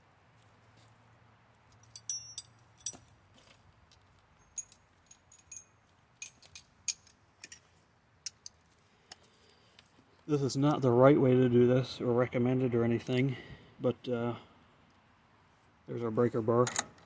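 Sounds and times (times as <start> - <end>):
metal hand tools clinking: 1.8 - 3.1, 4.3 - 7.6.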